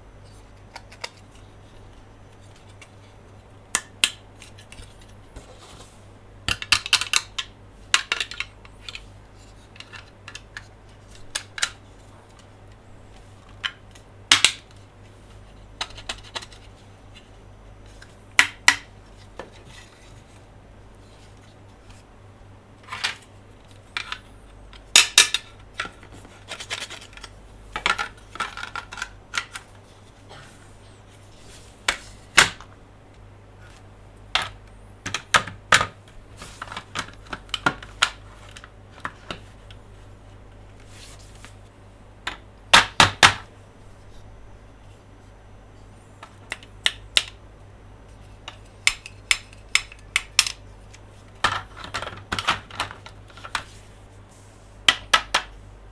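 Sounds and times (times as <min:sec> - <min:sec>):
low steady hum: 0:00.0 - 0:55.9
plastic toys clicking and clattering: 0:06.5 - 0:12.6, 0:13.5 - 0:14.8, 0:15.8 - 0:16.7, 0:22.8 - 0:29.8, 0:33.7 - 0:39.5, 0:46.2 - 0:47.4, 0:48.4 - 0:53.7.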